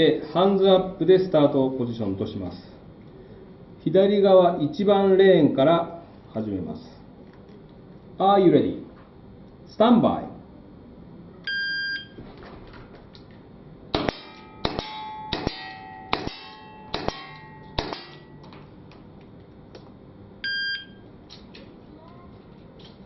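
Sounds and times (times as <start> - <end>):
shot timer buzzer: 20.4 - 21.0.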